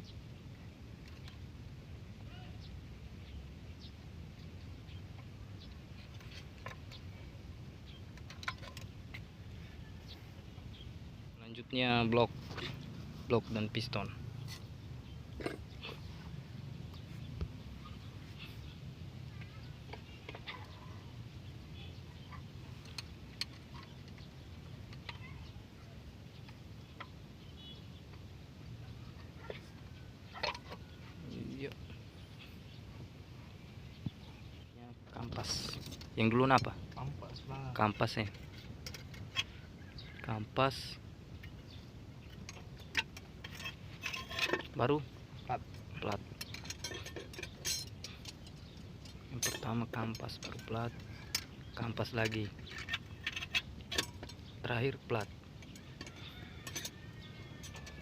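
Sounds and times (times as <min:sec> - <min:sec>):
low steady background rumble: 0:00.0 - 0:58.0
metal parts clicking and tapping: 0:08.2 - 0:09.3, 0:41.4 - 0:44.9, 0:45.7 - 0:58.0.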